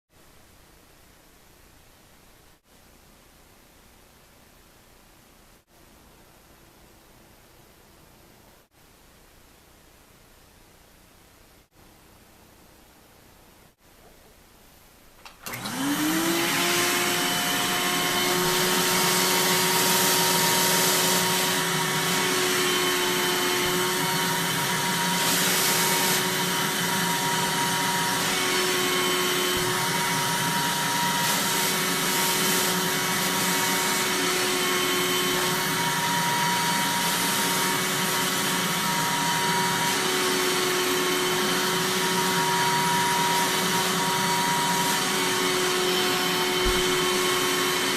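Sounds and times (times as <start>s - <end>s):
vacuum cleaner whining: 15.3s - 47.9s.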